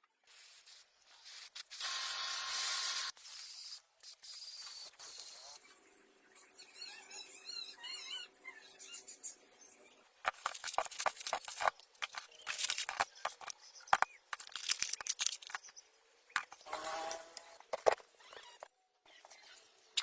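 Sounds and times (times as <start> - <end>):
clicks and scrapes on metal parts: 10.3 - 15.7.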